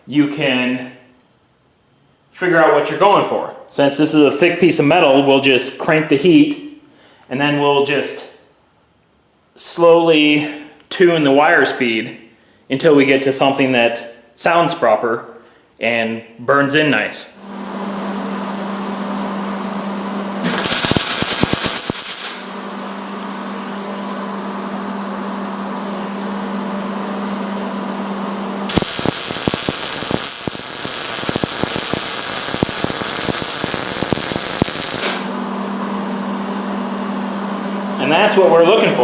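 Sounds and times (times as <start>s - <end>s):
steady low hum: 0.0s - 39.0s
welder arc crackling: 20.4s - 22.6s, 28.7s - 35.4s.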